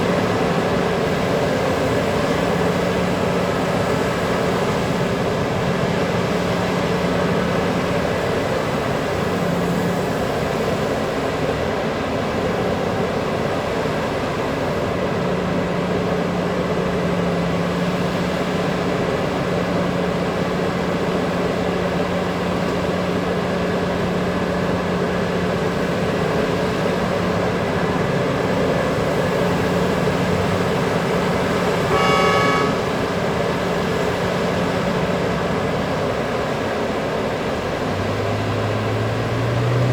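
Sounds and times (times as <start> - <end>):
hydraulic excavator drone: 0.0 - 39.9
horn blast: 31.7 - 33.1.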